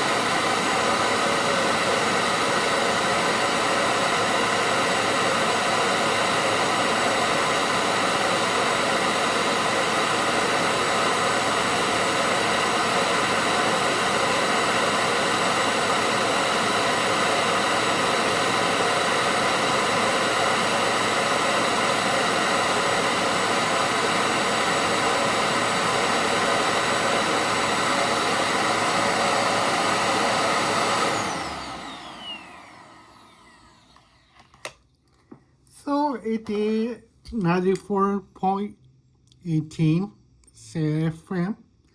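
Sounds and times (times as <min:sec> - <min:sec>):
vacuum cleaner motor running: 0:00.0 - 0:36.7
motor whine spinning down: 0:20.6 - 0:34.4.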